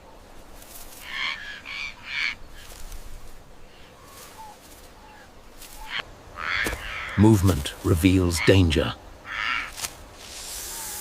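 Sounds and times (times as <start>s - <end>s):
faint background hiss: 0.0s - 11.0s
bird cawing: 1.0s - 2.8s, 3.7s - 7.2s, 9.2s - 9.8s.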